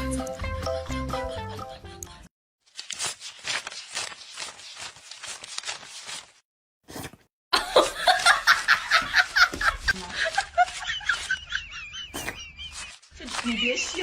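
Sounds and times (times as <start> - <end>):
people laughing loudly: 7.6 - 14.0
people snickering: 7.6 - 14.0.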